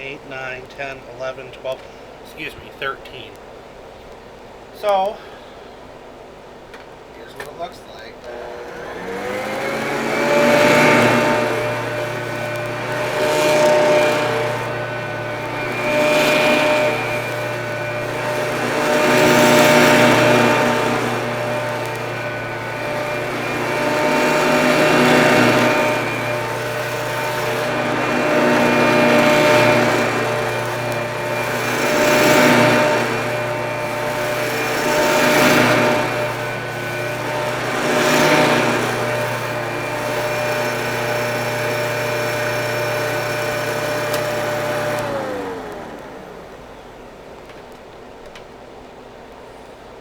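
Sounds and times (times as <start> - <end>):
vacuum cleaner motor whine: 7.2 - 50.0
vacuum motor winding down: 8.2 - 47.3.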